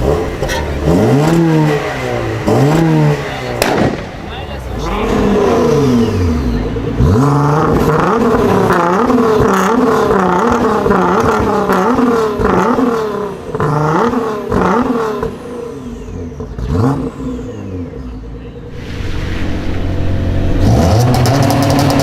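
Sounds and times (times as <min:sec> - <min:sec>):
car engine revving: 0:00.0 - 0:22.0
exhaust pops: 0:03.6 - 0:04.4, 0:18.7 - 0:22.0.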